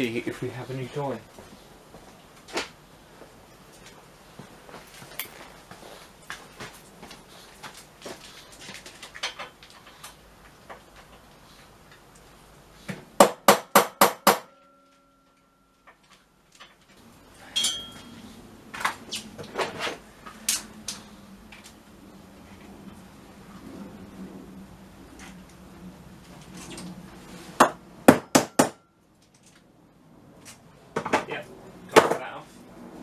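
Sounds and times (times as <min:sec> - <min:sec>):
tools clinking and knocking: 0:17.5 - 0:18.2.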